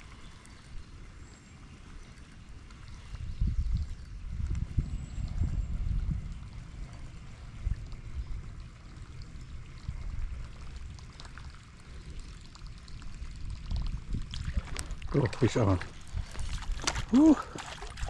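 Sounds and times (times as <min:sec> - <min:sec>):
water pouring and splashing: 0:00.0 - 0:18.0
low rumble: 0:03.3 - 0:18.0.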